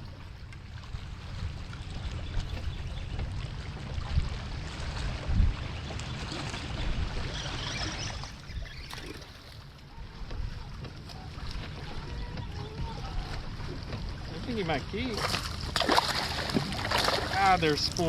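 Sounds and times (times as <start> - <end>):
wind rumbling on microphone: 0.0 - 9.2
water lapping against a boat: 0.0 - 18.0.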